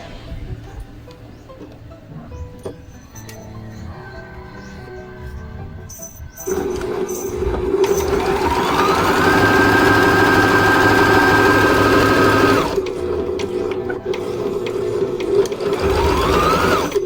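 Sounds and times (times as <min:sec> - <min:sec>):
sewing machine motor whining: 0:06.4 - 0:17.0.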